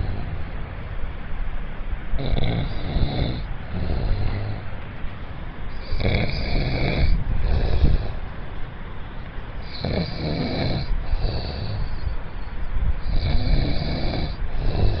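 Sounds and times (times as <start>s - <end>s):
man snoring heavily: 0.0s - 0.4s, 2.2s - 4.7s, 5.8s - 8.2s, 9.6s - 12.0s, 13.0s - 15.0s.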